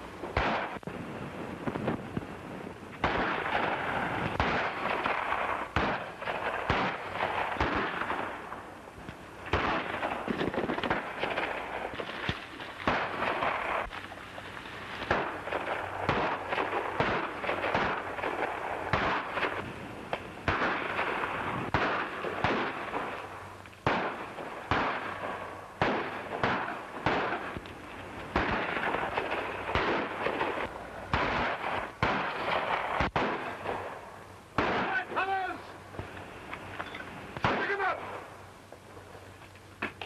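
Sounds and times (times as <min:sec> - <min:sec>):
old soundtrack hiss: 0:00.0 - 0:40.0
gunshots: 0:00.3 - 0:00.9, 0:03.0 - 0:08.6, 0:09.4 - 0:13.9, 0:15.0 - 0:19.6, 0:20.4 - 0:27.6, 0:28.3 - 0:34.0, 0:34.6 - 0:35.6, 0:37.4 - 0:38.3.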